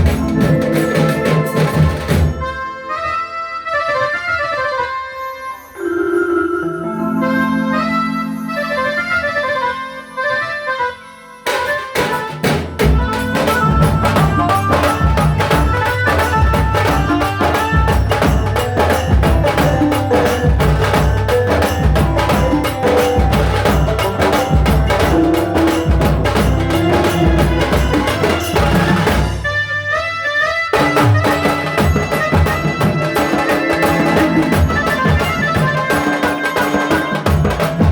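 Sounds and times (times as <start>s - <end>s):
melody: 0.0s - 3.3s, 5.1s - 29.6s, 31.0s - 37.9s
fast dense drumming: 12.4s - 29.4s.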